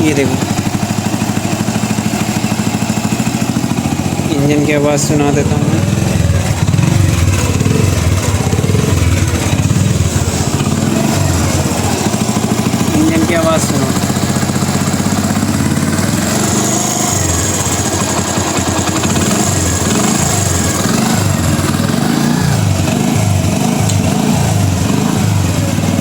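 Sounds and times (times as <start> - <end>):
motorcycle engine idling: 0.0 - 26.0.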